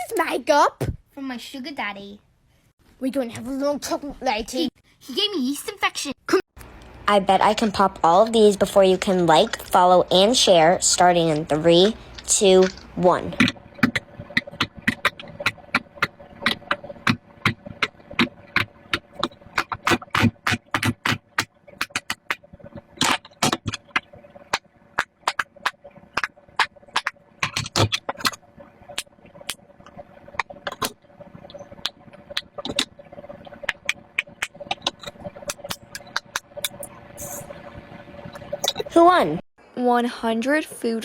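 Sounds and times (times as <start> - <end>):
fidget toy bubbles popping: 9.0 - 32.9, 33.6 - 37.4.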